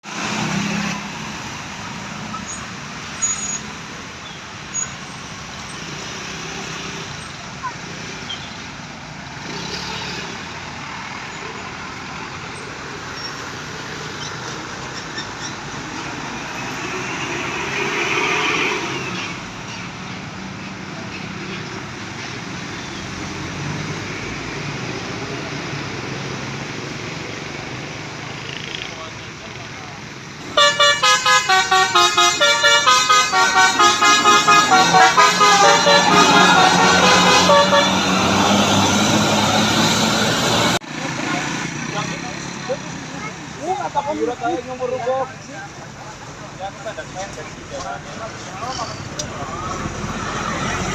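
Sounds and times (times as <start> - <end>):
roadside traffic noise: 0.0 - 50.9
vehicle approaching: 20.3 - 50.9
musical air horn tune: 30.4 - 39.3
rushing noise: 30.4 - 40.8.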